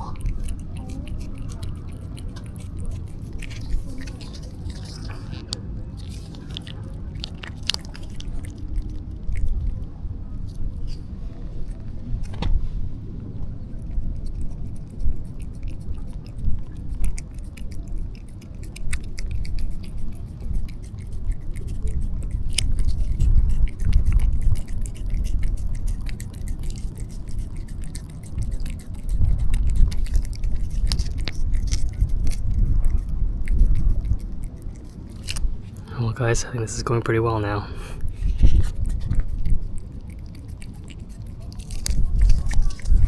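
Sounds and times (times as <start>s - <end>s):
cat licking and chewing: 0.0s - 43.0s
low rumble: 37.7s - 43.0s.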